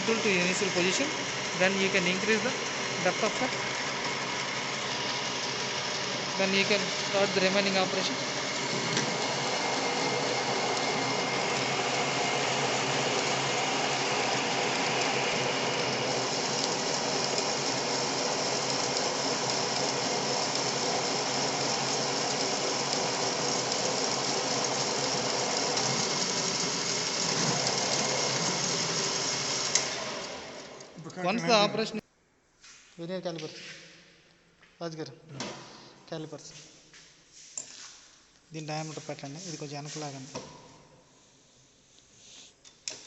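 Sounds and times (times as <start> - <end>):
lathe motor hum and whine: 0.0 - 30.9.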